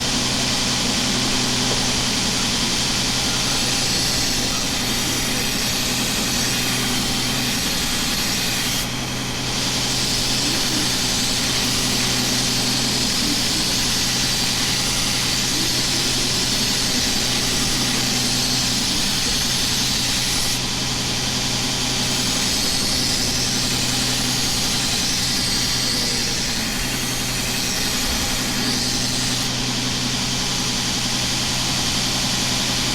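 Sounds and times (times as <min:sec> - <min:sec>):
steel grinding hiss: 0:02.2 - 0:29.5.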